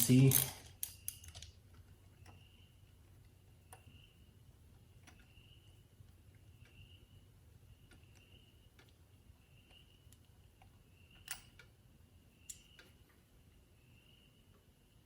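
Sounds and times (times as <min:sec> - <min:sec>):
faint high chirp: 0:03.6 - 0:04.4, 0:05.1 - 0:08.8, 0:09.4 - 0:10.2, 0:13.6 - 0:14.5.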